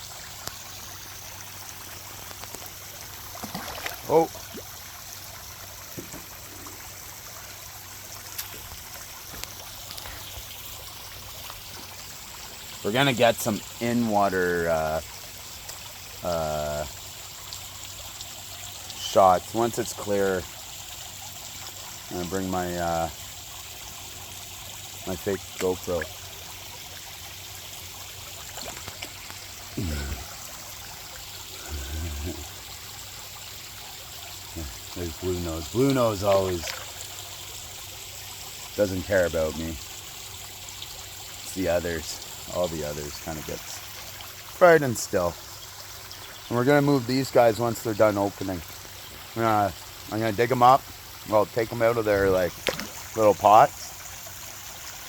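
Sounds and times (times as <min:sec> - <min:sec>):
water trickling into pond: 0:00.0 - 0:55.0
short low voice-like sounds: 0:29.8 - 0:30.3.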